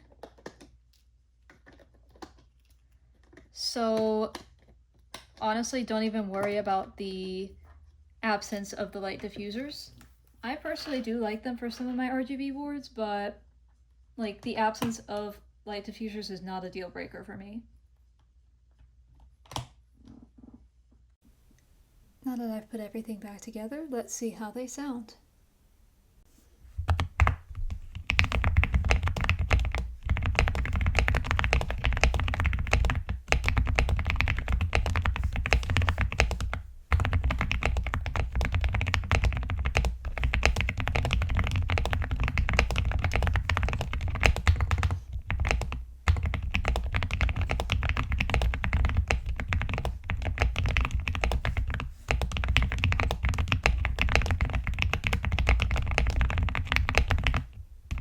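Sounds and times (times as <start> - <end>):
mechanical keyboard typing: 26.9 - 58.0.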